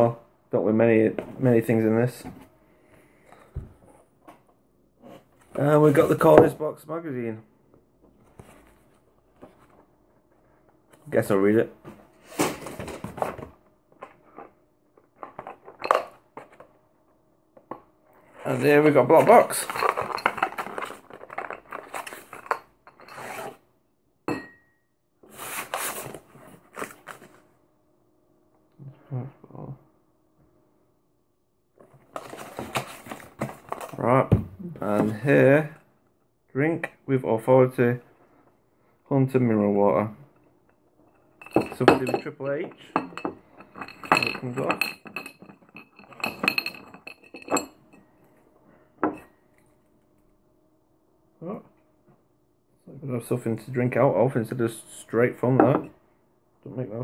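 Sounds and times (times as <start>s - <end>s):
drinking glass clinking: 24.3s - 24.8s, 41.1s - 47.8s.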